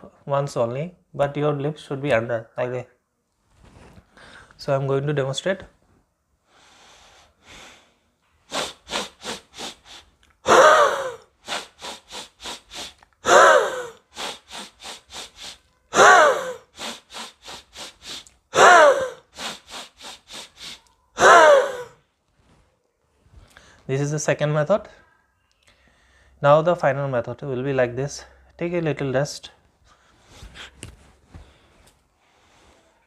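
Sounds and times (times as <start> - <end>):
man sniffing through nose: 6.5 - 22.0
man blowing out through lips: 8.4 - 22.0.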